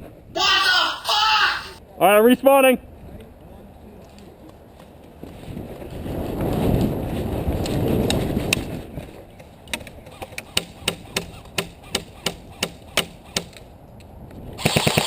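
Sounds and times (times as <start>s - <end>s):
airsoft gun full-auto burst: 14.6s - 15.0s.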